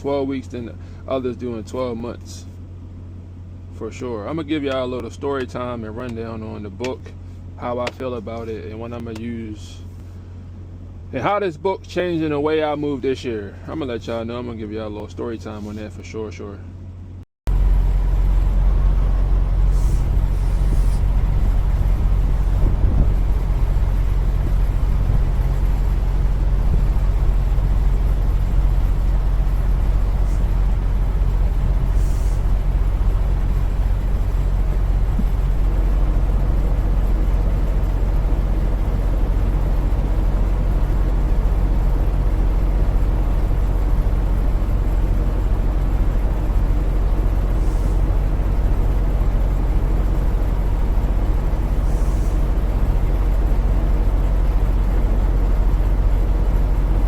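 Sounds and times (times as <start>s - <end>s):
diesel truck engine idling: 0.0s - 57.0s
faint short hisses: 19.7s - 21.1s, 32.0s - 32.5s, 47.6s - 48.0s, 51.8s - 52.4s.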